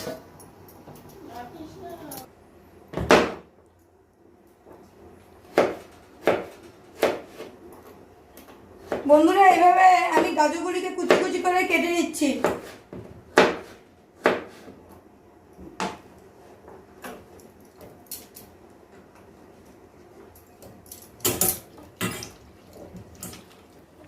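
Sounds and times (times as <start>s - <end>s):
knife chopping carrots: 5.4s - 7.6s, 12.4s - 14.8s.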